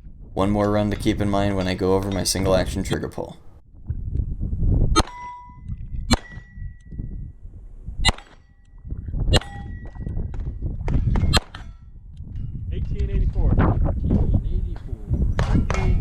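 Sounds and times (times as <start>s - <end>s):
steel target ringing: 5.0s - 7.0s, 9.4s - 10.2s.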